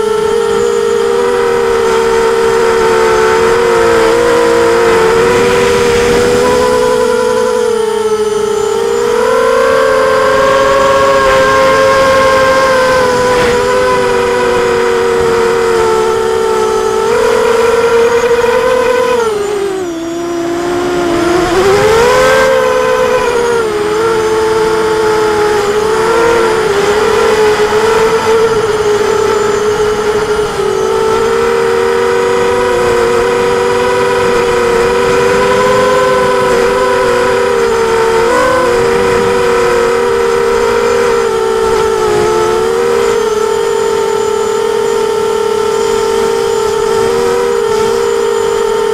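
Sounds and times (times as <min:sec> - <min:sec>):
quadcopter propellers whining: 0:00.0 - 0:48.9.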